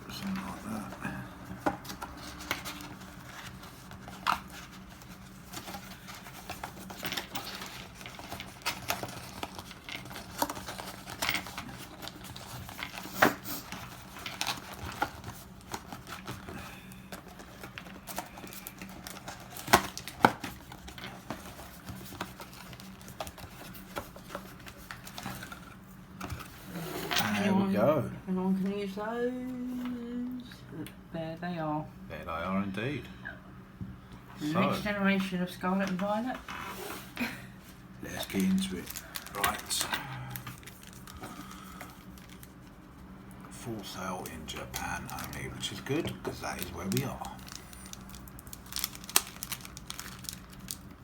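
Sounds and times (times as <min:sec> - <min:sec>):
steady low hum: 0:00.0 - 0:51.0
packaging crinkling and rustling: 0:01.6 - 0:27.4, 0:36.7 - 0:51.0.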